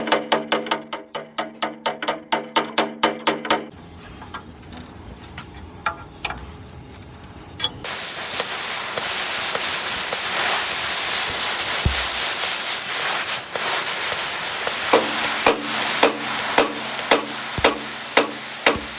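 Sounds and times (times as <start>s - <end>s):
welding crackling hiss: 7.8s - 18.9s
hammer blows on steel: 8.4s - 18.9s.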